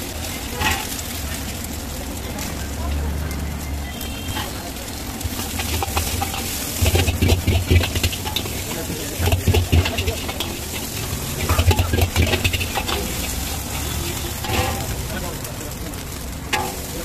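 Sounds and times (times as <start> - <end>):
rice sizzling in a pan: 0.0 - 17.0
metal spatula clattering: 0.3 - 1.8, 4.3 - 15.4, 16.4 - 17.0.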